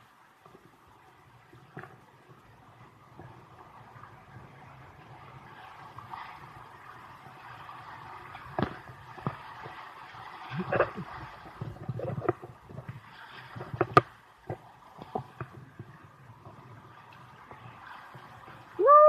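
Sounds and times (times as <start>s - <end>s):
river running: 0.0s - 19.0s
paddle splashes and knocks: 7.2s - 16.6s.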